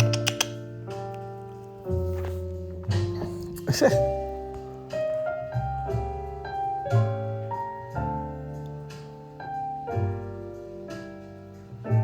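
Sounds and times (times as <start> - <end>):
jazz piano: 0.0 - 12.0.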